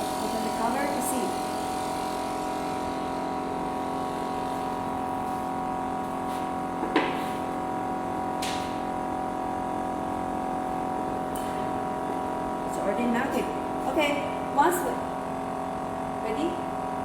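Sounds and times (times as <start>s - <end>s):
electric furnace buzzing: 0.0s - 17.0s.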